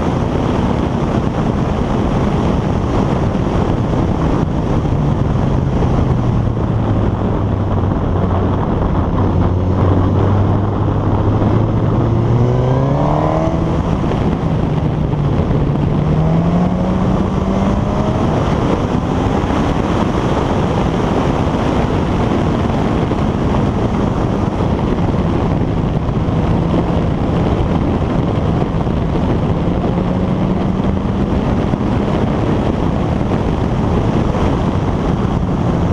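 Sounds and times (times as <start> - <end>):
motorcycle engine running: 0.0 - 35.9
rushing noise on microphone: 0.0 - 35.9.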